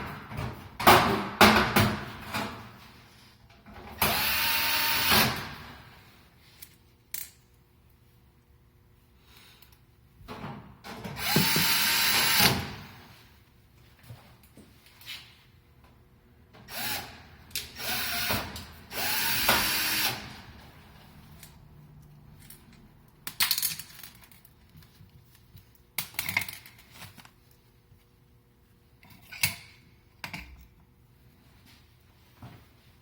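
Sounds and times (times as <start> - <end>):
cordless drill driving screws: 4.0 - 5.4, 11.2 - 12.7, 17.8 - 20.3.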